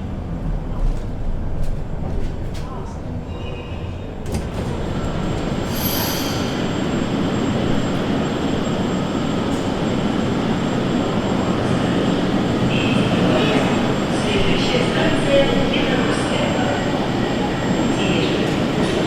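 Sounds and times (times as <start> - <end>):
high wheel squeal: 5.6 - 7.5.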